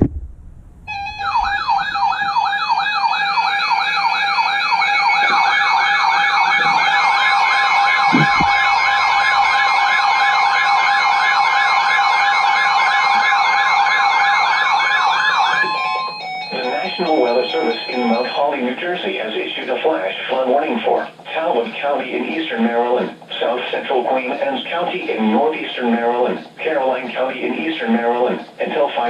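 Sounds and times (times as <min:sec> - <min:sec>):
wavering siren tone: 0:00.8 - 0:18.6
steady siren tones: 0:00.8 - 0:19.1
electronic siren yelp: 0:00.9 - 0:18.7.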